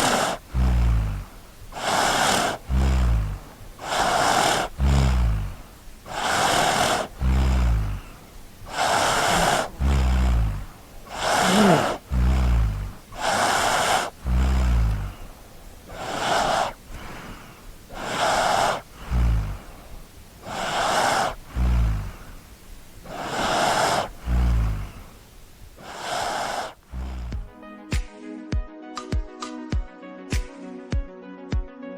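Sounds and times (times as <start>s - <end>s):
child snoring: 0.0s - 27.5s.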